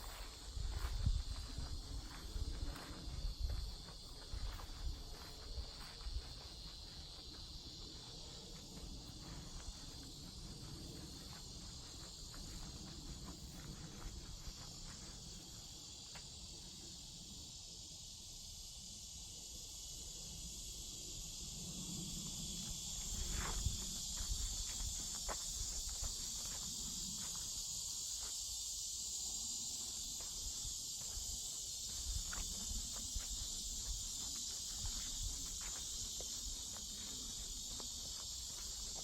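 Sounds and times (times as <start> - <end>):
cicadas buzzing: 0.0 - 39.0.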